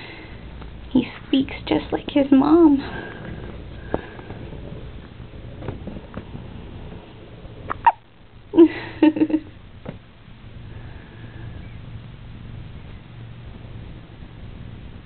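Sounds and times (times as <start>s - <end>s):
baby hiccuping: 7.7s - 8.0s.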